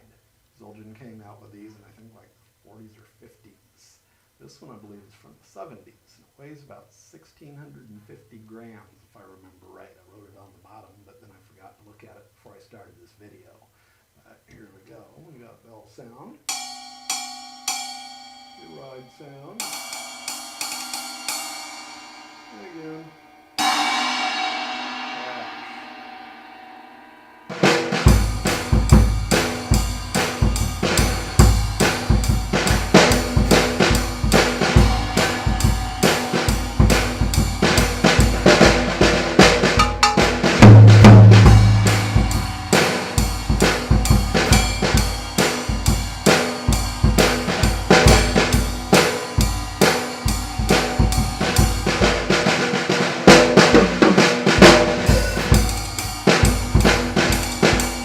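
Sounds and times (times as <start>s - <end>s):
cymbal wash: 16.5s - 58.0s
drum kit playing a groove: 27.5s - 58.0s
loud low drum hit: 27.5s - 58.0s.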